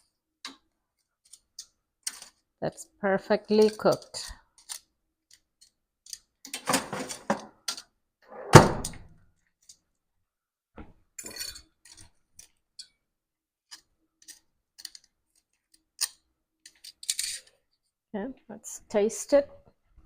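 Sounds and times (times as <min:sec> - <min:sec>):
heavy thunk: 0:08.4 - 0:09.1.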